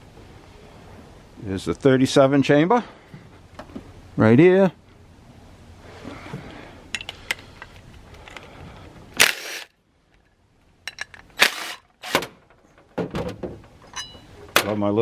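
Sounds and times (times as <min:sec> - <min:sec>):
impact driver bursts: 0:09.2 - 0:09.7, 0:11.4 - 0:12.3.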